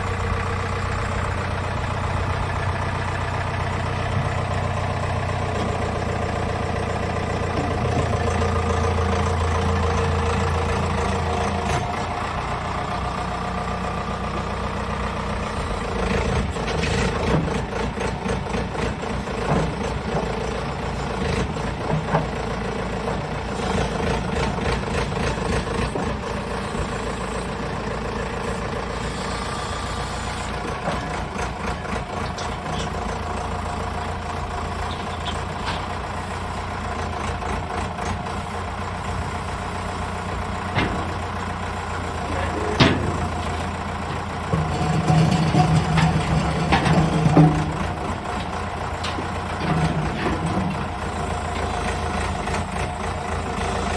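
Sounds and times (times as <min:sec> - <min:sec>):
diesel engine idling: 0:00.0 - 0:16.6, 0:17.2 - 0:53.9
sharp metal clanks and knocks: 0:42.2 - 0:48.2.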